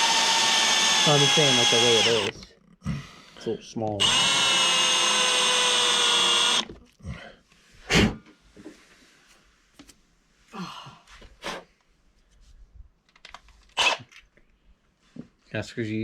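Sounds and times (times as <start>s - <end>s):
power drill spinning: 0.0s - 2.5s, 4.0s - 6.8s.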